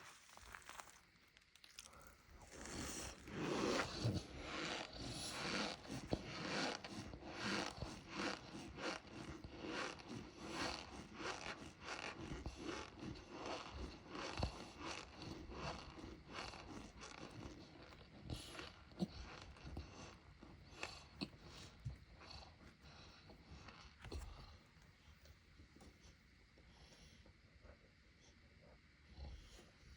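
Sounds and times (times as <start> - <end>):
squeaky chewing crunches: 0.0 - 21.9.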